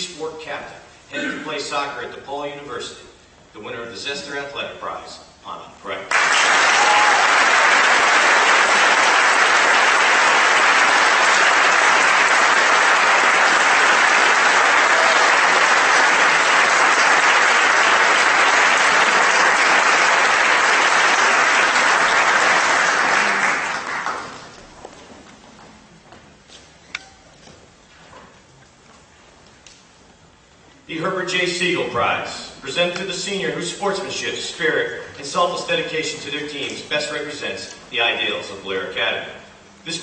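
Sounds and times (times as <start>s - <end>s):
audience applauding: 6.1s - 24.7s.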